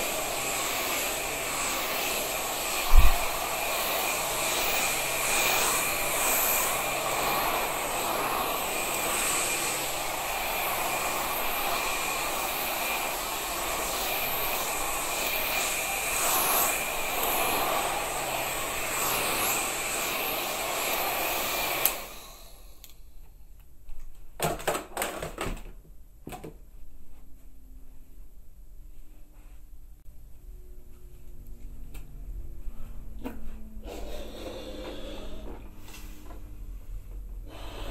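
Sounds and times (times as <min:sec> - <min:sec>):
motor-driven blower whirring: 0:00.0 - 0:22.9.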